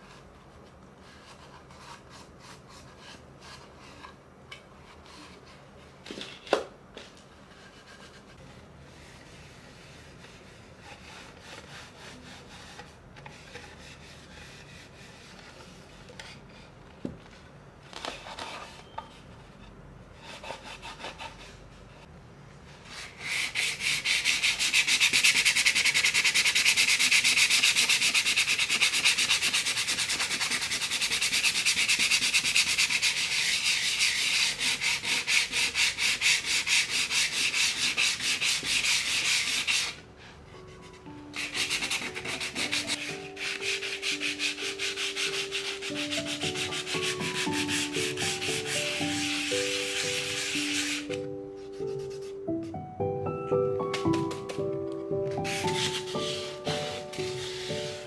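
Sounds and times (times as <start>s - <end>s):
rubbing strokes across a surface: 22.8s - 52.4s, 55.3s - 58.0s.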